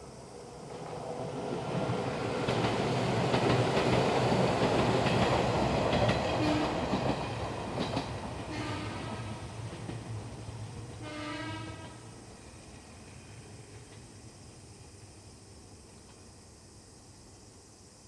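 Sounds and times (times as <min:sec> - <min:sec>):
electric train passing: 0:00.0 - 0:18.0.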